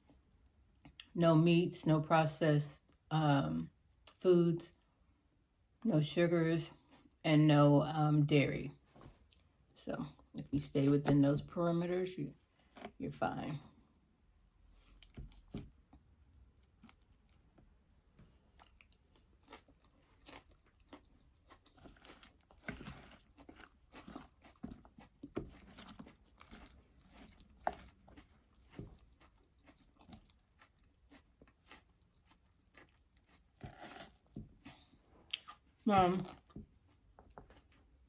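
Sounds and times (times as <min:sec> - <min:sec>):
person chewing raw salad: 0:14.3 - 0:38.0.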